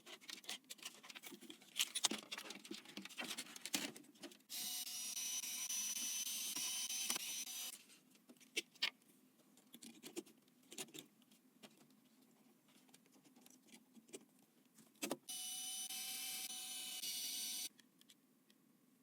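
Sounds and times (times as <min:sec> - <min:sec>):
small electric motor whirring: 0:04.5 - 0:07.8, 0:15.3 - 0:17.7.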